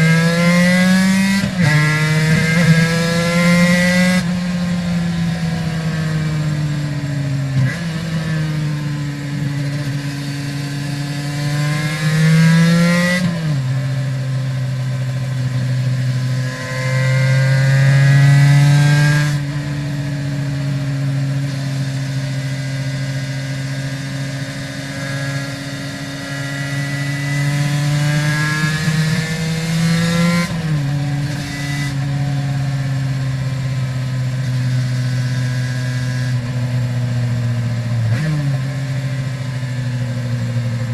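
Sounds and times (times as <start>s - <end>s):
motorcycle engine under way: 0.0s - 40.9s.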